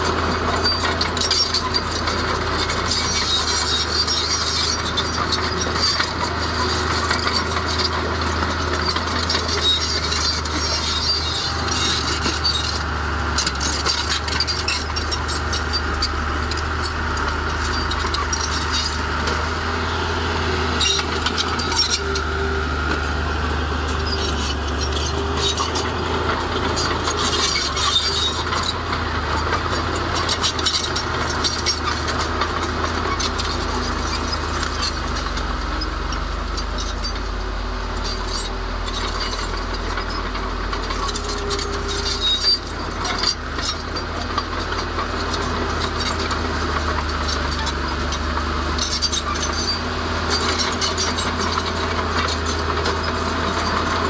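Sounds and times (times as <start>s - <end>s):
clanks and scrapes of steel and rock: 0.0s - 54.0s
diesel machinery engine hum: 0.0s - 54.0s.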